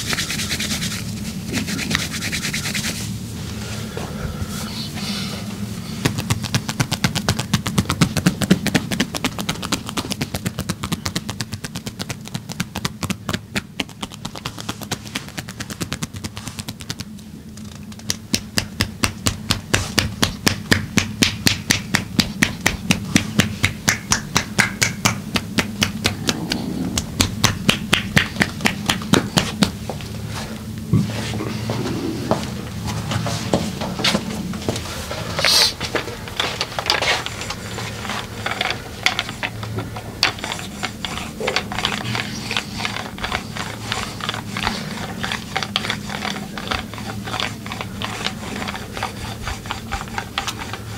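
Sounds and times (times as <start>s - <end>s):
steady low hum: 0.0s - 50.9s
hands slapping body: 6.0s - 17.2s, 17.9s - 29.8s.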